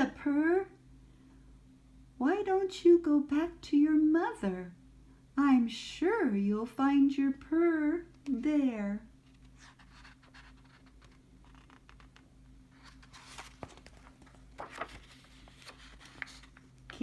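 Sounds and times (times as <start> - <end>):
low electrical hum: 0.0 - 17.0
paper pages rustling: 9.2 - 17.0.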